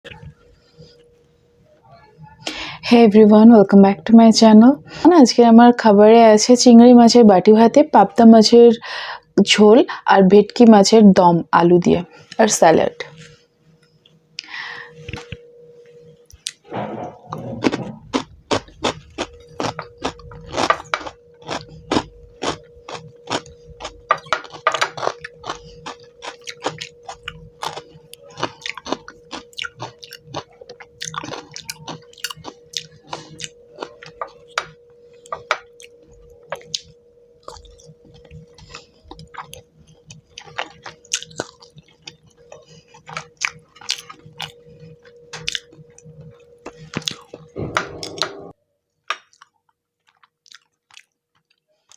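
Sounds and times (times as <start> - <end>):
faint steady hum: 0.1 - 51.9
crunching: 16.4 - 34.4
wet chewing and lip smacks: 35.3 - 44.6, 45.4 - 47.4, 49.2 - 51.9.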